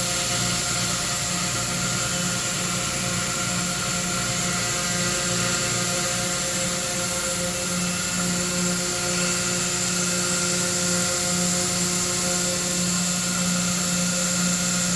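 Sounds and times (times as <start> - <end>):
wood routers whirring: 0.0 - 14.9.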